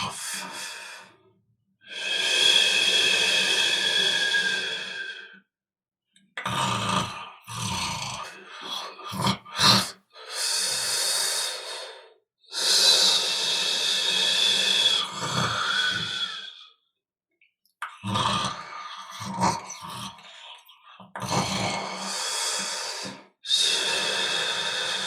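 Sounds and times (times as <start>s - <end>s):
person snoring: 0.0s - 1.2s, 1.9s - 5.4s, 6.4s - 16.7s, 17.9s - 25.0s
long noisy breaths: 0.1s - 1.3s, 1.9s - 5.4s, 9.6s - 16.8s, 21.8s - 25.0s.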